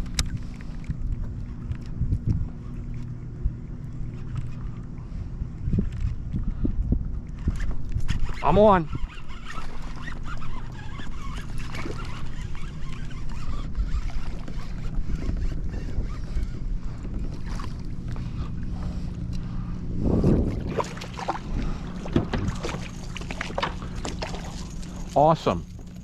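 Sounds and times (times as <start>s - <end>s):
steady low rumble: 0.0s - 8.4s, 11.1s - 26.0s
water splashing: 20.4s - 26.0s
knocks and clicks on kayak: 22.0s - 24.4s.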